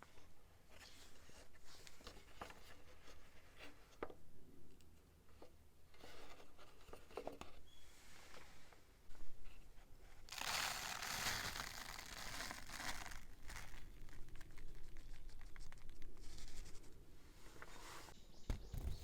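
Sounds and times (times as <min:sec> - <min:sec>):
crinkling and crackling: 0:09.1 - 0:19.0
paper or plastic tearing: 0:10.3 - 0:16.6.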